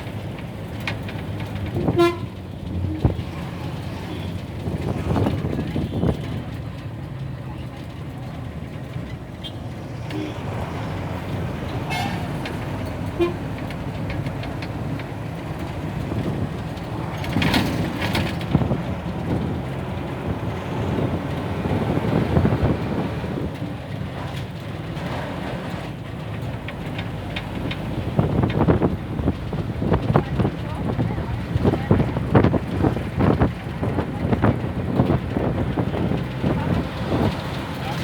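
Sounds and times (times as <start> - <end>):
bus diesel engine running: 0.0 - 38.0
road noise: 0.0 - 38.0
bus horn toot: 1.7 - 3.1, 9.4 - 10.6, 11.8 - 12.4, 13.0 - 13.5.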